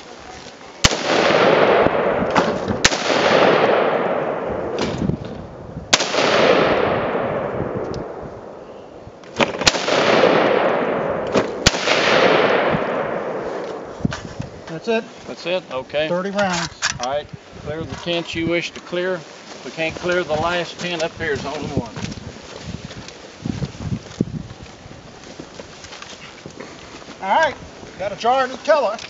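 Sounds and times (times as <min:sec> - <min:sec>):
rifle shots with echo: 0:00.8 - 0:05.0, 0:05.9 - 0:08.6, 0:09.4 - 0:13.9.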